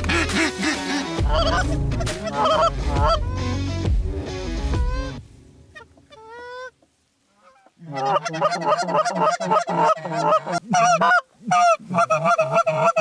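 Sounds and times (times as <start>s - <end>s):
geese honking: 0.0s - 3.5s, 5.8s - 6.8s, 7.4s - 13.0s.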